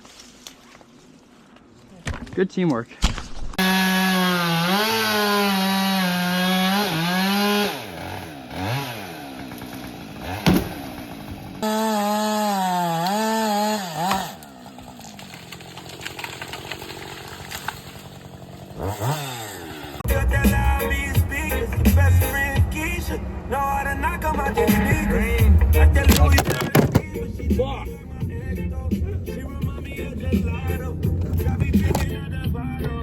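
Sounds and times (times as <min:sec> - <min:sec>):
chainsaw revving: 0:03.6 - 0:22.5.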